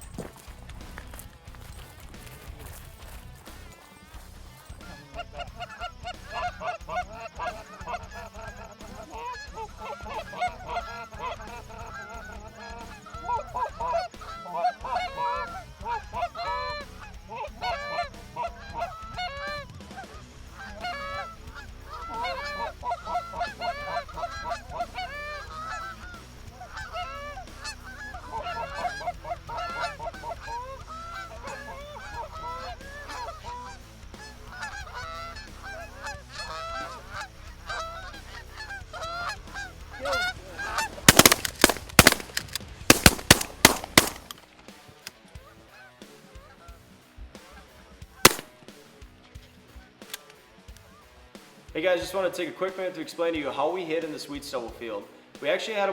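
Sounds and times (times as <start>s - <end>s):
geese honking: 0.0s - 44.4s, 48.2s - 48.5s.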